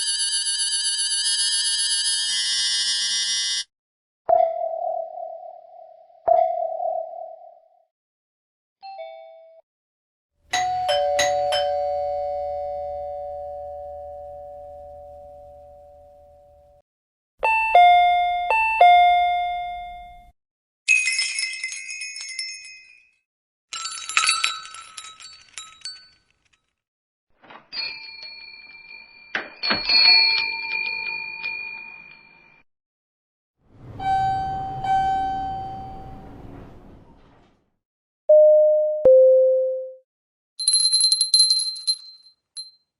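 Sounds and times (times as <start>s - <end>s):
ding-dong doorbell chimes: 10.5s - 16.6s, 17.4s - 20.2s, 33.9s - 36.3s, 38.3s - 40.0s
jingling door bell: 20.9s - 23.1s, 23.7s - 26.3s, 27.7s - 32.5s, 40.6s - 42.9s.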